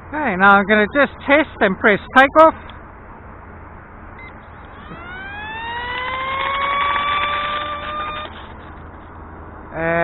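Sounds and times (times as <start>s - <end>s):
electric motor and propeller whine: 4.3s - 9.2s.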